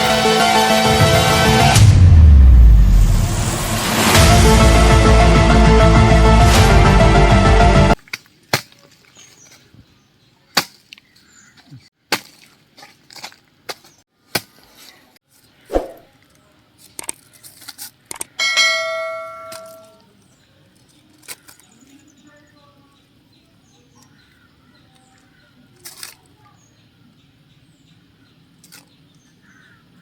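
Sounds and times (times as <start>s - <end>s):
music: 0.0s - 8.0s
metallic ding ringing: 18.4s - 20.0s.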